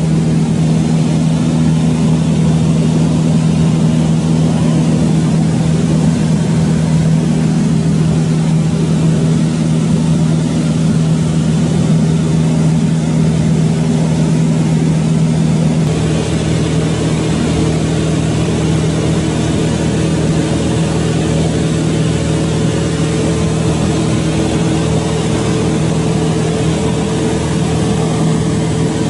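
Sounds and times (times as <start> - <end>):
continuous rushing noise: 0.0 - 29.0
engine running steadily: 0.0 - 29.0.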